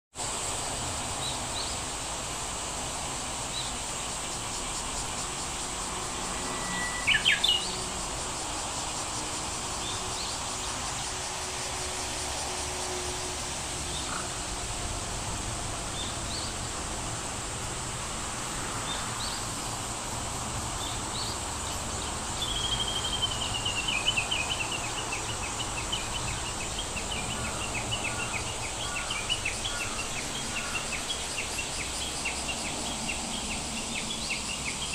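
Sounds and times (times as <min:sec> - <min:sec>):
high insect buzz: 0:00.2 - 0:34.9
birds chirping: 0:05.9 - 0:08.0.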